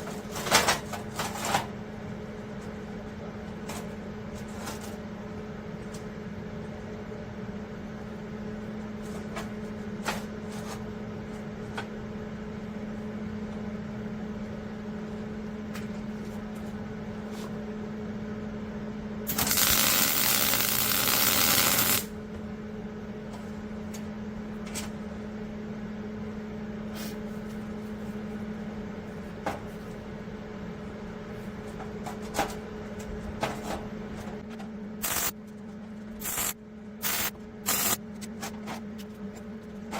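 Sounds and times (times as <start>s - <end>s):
steady hum: 18.6s - 31.8s, 34.1s - 39.9s
welding arc crackling and hissing: 19.3s - 22.1s, 35.0s - 35.3s, 36.2s - 38.0s.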